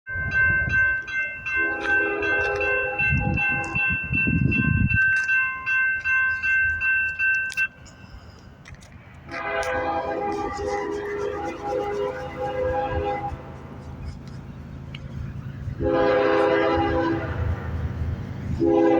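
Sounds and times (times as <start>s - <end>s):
steady high ringing: 0.1s - 8.6s
heavy rumble of train: 0.1s - 18.9s
locomotive horn blowing: 1.5s - 3.9s, 9.3s - 13.8s, 15.8s - 17.8s, 18.6s - 18.9s.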